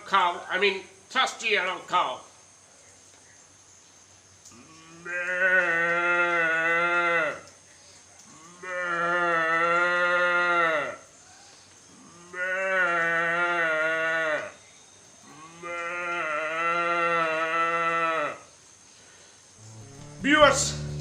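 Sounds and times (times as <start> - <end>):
man imitating cow moo: 19.6 - 21.0.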